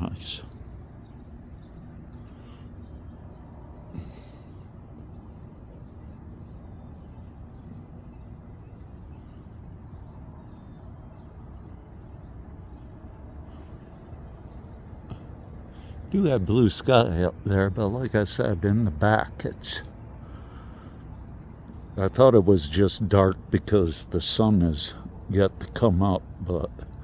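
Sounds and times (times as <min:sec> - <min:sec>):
faint bird chirps: 0:00.0 - 0:27.0
breathy sniff: 0:03.9 - 0:04.8.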